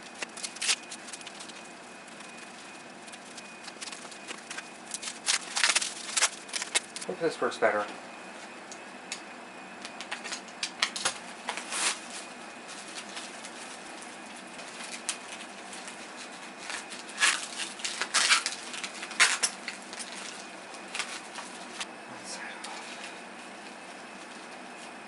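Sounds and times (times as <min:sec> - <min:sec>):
packaging rustling and crinkling: 0:00.0 - 0:07.1, 0:10.0 - 0:21.9.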